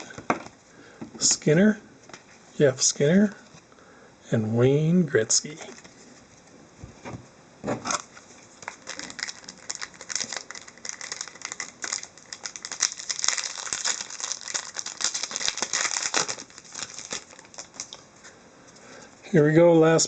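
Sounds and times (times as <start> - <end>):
plastic wrapper crinkling and tearing: 7.9 - 18.0.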